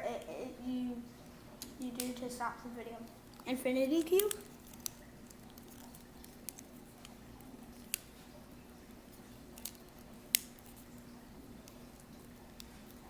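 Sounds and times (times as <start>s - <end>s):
fidget toy clicking: 3.9s - 5.0s.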